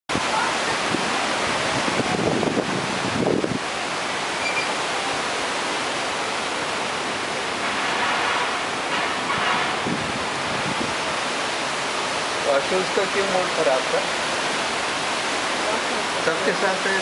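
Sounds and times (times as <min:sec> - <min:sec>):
storm wind rushing: 0:00.1 - 0:04.0, 0:07.7 - 0:12.3.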